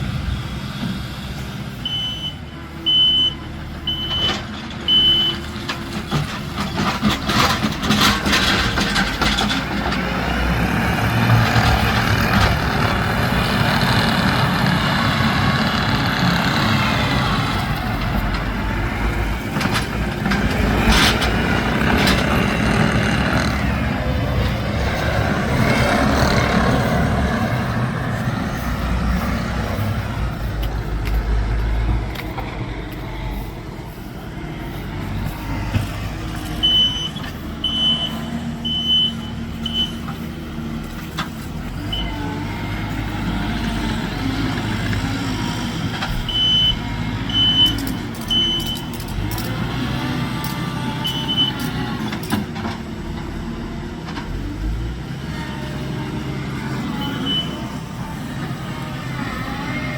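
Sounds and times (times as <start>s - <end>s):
skid steer engine running: 0.0s - 59.9s
backup alarm beeping: 1.8s - 5.4s, 36.6s - 40.0s.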